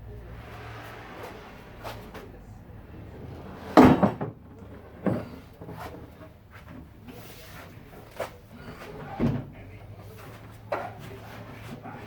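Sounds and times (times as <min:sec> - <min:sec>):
wooden cabinet parts knocking: 0:03.7 - 0:06.4.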